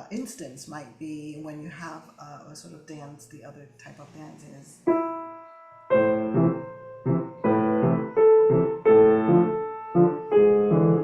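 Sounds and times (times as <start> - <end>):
piano playing detached chords: 4.9 - 11.0.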